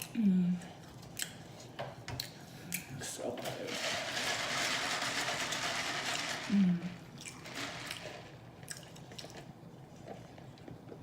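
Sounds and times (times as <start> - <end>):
wet chewing and lip-smacking: 0.9 - 1.6.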